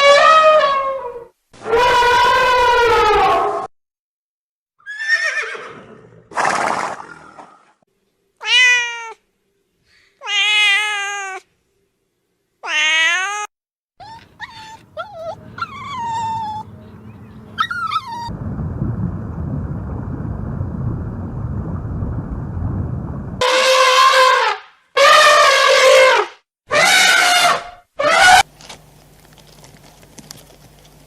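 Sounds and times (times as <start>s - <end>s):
cats meowing: 8.4s - 9.2s, 10.2s - 11.5s, 12.6s - 16.7s, 17.6s - 18.3s.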